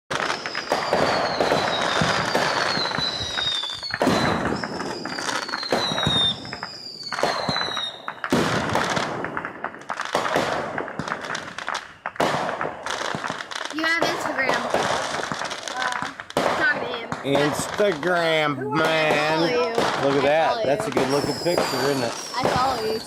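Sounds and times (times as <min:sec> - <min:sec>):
firework whistles falling in pitch: 0:00.1 - 0:09.0, 0:18.2 - 0:23.0
fireworks popping and crackling: 0:00.1 - 0:23.0.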